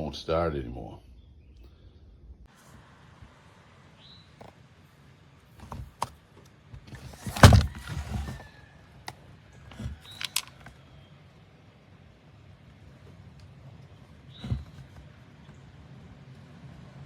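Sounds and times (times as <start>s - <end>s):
chainsaw being handled clicks: 10.1s - 10.6s.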